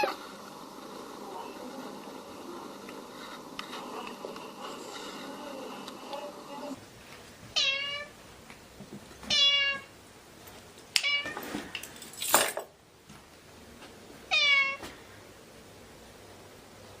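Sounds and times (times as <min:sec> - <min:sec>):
cat meowing: 0:07.6 - 0:08.1, 0:09.3 - 0:09.9, 0:14.3 - 0:14.8.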